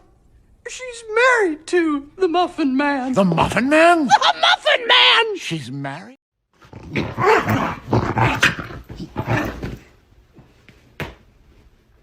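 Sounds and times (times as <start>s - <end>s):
dog growling: 6.6s - 9.8s.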